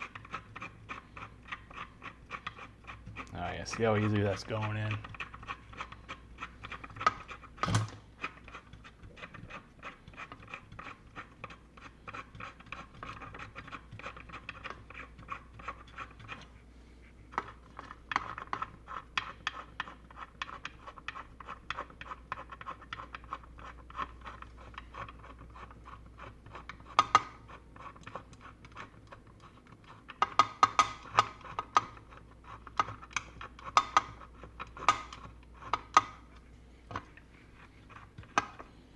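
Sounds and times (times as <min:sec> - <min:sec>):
connector clicking and scraping: 0:26.5 - 0:38.7.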